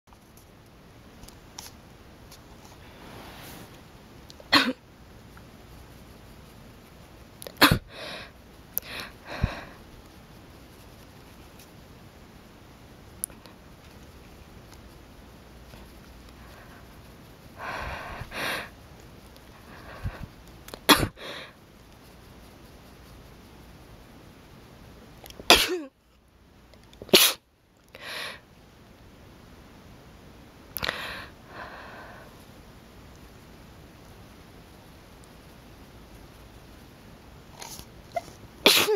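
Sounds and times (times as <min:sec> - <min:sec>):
person sneezing: 0:04.5 - 0:04.8, 0:07.6 - 0:08.1, 0:20.8 - 0:21.4, 0:25.5 - 0:25.9, 0:27.1 - 0:27.4, 0:37.6 - 0:38.9
breathy sounds: 0:30.8 - 0:32.4.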